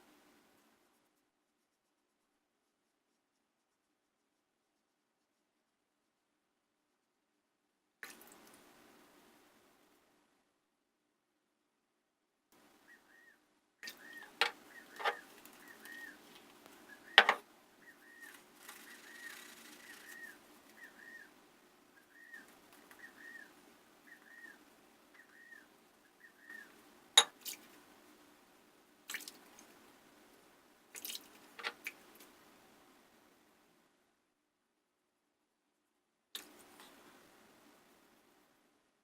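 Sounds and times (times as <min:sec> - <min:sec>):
water dripping and splashing: 0:08.0 - 0:08.6, 0:27.2 - 0:27.8, 0:29.1 - 0:29.8, 0:30.9 - 0:32.3
faint high chirp: 0:12.8 - 0:16.2, 0:16.8 - 0:21.3, 0:22.0 - 0:27.3.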